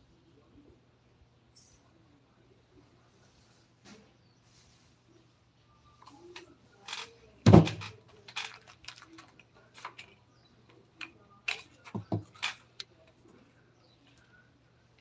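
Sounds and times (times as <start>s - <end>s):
hard objects clicking and tapping: 11.0s - 12.9s.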